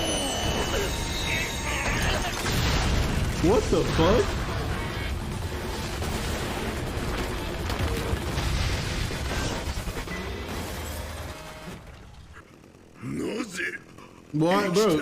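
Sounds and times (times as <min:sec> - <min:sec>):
action soundtrack music: 0:00.1 - 0:12.0.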